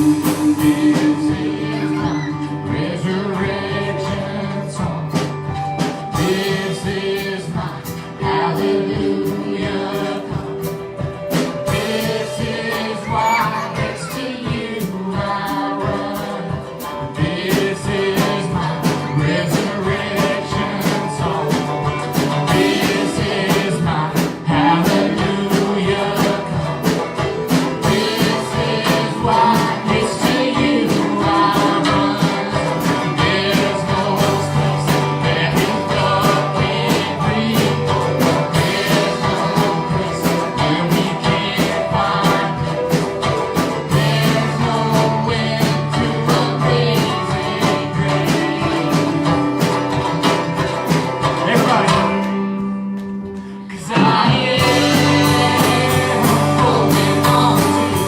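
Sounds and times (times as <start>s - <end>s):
person singing: 0.0s - 52.4s, 53.4s - 58.0s
band with guitar: 0.0s - 58.0s.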